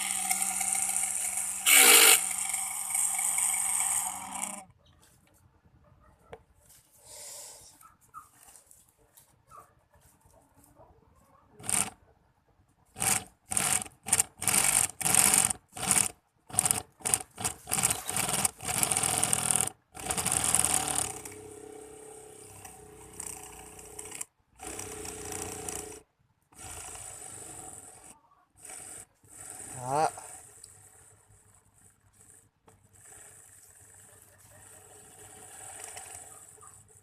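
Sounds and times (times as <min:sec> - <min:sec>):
electric screwdriver motor bursts: 0:00.0 - 0:04.6, 0:11.6 - 0:12.0, 0:13.0 - 0:21.5, 0:22.4 - 0:26.0.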